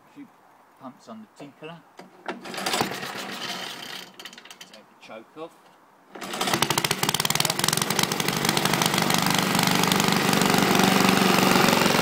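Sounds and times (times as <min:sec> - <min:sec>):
lawn mower engine running: 0:02.2 - 0:04.7, 0:06.1 - 0:12.0.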